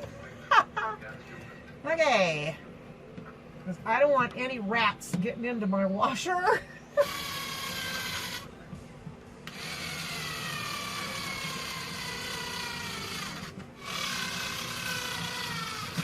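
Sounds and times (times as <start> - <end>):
power drill driving screws: 7.0 - 8.5, 9.5 - 16.0.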